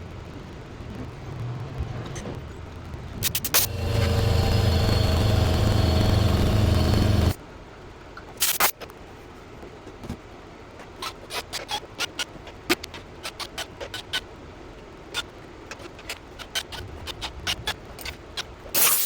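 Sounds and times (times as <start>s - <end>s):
shop machine motor humming: 3.4s - 7.4s.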